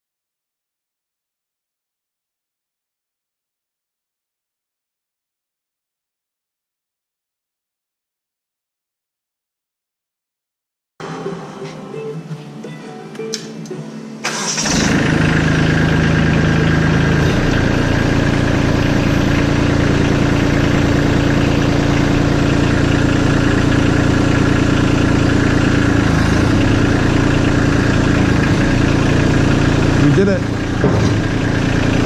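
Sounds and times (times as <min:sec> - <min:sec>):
diesel tractor engine idling: 0:14.2 - 0:32.0.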